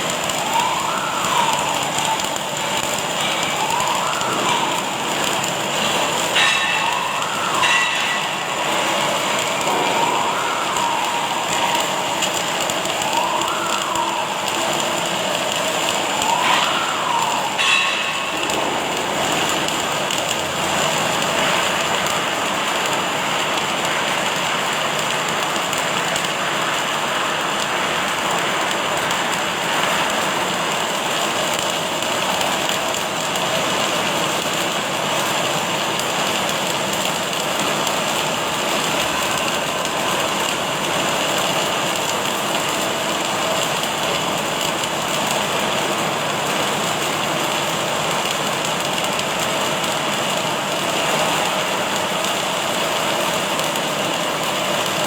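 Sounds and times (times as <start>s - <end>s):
welding arc crackling and hissing: 0.0s - 55.0s.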